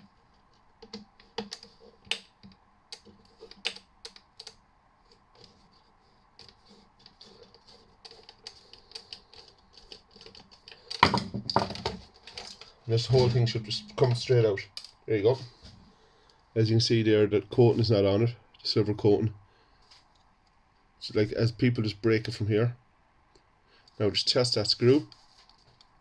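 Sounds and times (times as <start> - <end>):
screwdriver clicks and taps: 0.8 - 4.6.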